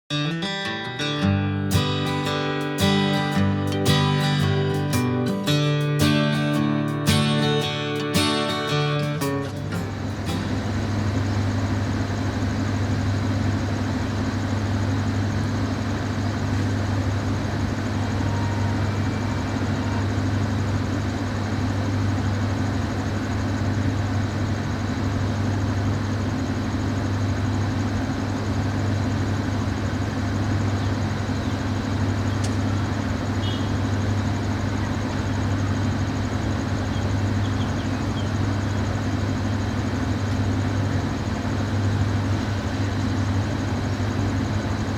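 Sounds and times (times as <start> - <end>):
diesel train engine idling: 1.6 - 44.9.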